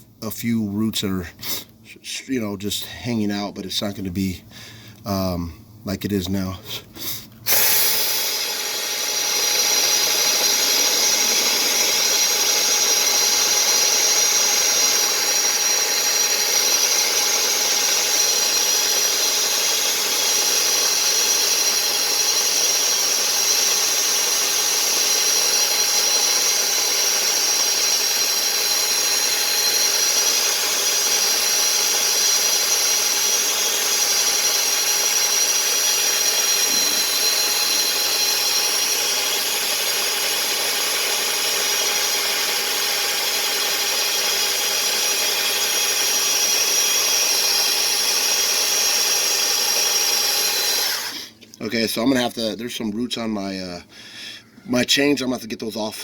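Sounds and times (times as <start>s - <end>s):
drill whining: 6.9s - 51.6s.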